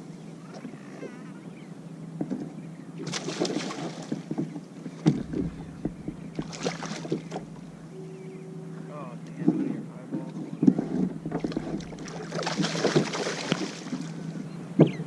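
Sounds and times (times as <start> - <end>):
knocks and clatter on a kayak: 2.2 - 7.9, 9.3 - 14.1, 14.8 - 15.0.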